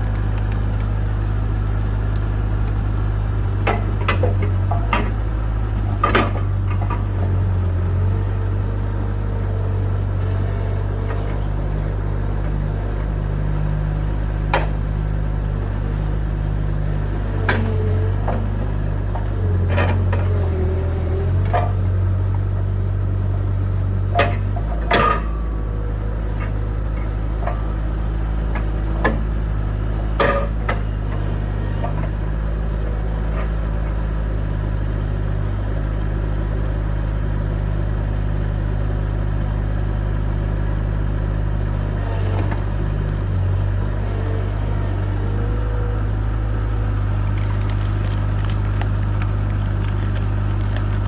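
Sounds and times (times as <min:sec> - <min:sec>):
diesel engine running: 0:00.0 - 0:51.0
sharp knocks and cracks: 0:47.1 - 0:51.0.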